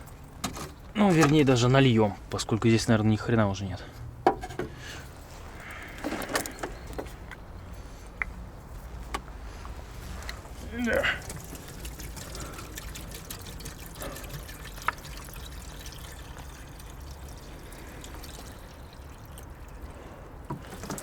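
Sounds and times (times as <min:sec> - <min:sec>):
water trickling: 0:10.0 - 0:21.0.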